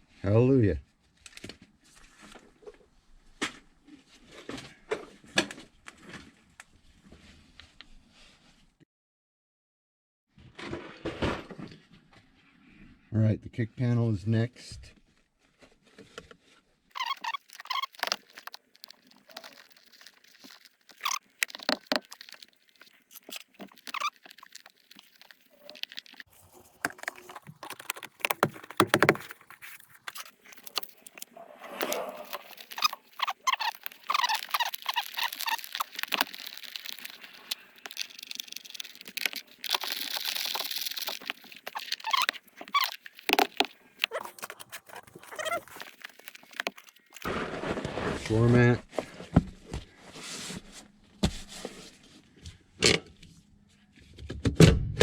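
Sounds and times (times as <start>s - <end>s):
scraping and rustling: 15.6s - 52.3s
plastic squeaking on plastic: 16.9s - 47.3s.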